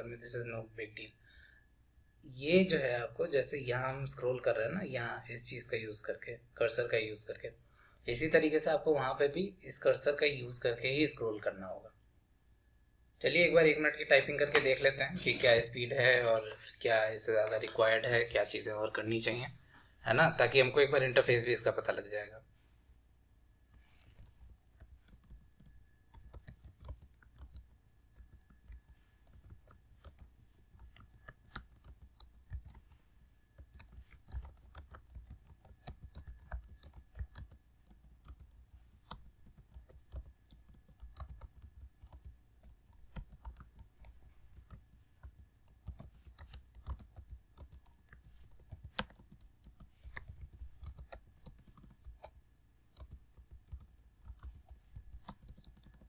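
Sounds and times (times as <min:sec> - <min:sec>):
computer keyboard typing: 0:23.8 - 0:56.0.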